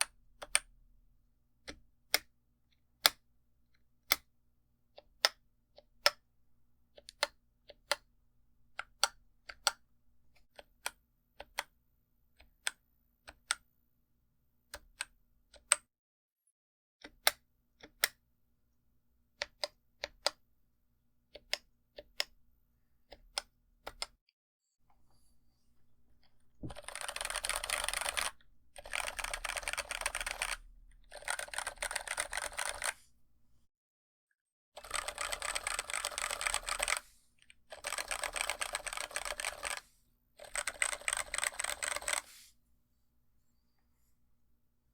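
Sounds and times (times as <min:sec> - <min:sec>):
fast typing on keyboard: 0:26.6 - 0:33.0, 0:34.8 - 0:37.1, 0:37.7 - 0:39.8, 0:40.4 - 0:42.3
mechanical keyboard keystrokes: 0:26.6 - 0:33.0, 0:34.8 - 0:37.1, 0:37.7 - 0:39.8, 0:40.4 - 0:42.3.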